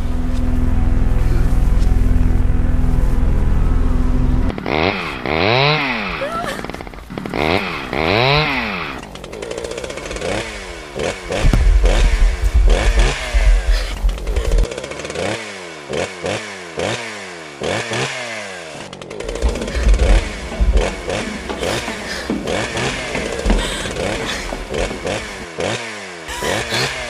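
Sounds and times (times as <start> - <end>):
heavy low rumbling: 0.0 - 14.7, 19.0 - 25.6
chainsaw engine revving: 4.2 - 27.0.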